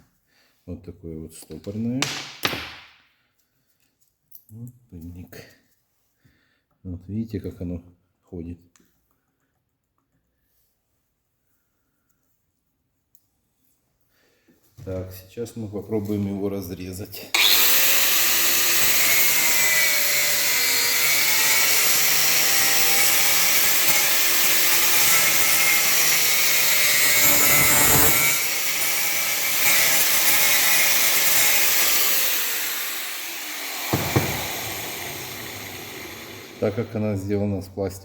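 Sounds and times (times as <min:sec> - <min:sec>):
power cutting tool cutting plastic: 0:17.4 - 0:37.0
short sharp knock: 0:33.9 - 0:35.7.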